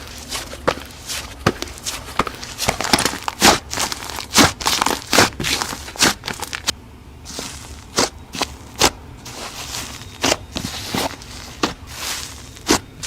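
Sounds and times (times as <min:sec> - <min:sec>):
slime squished crackling and popping: 0:02.8 - 0:06.7.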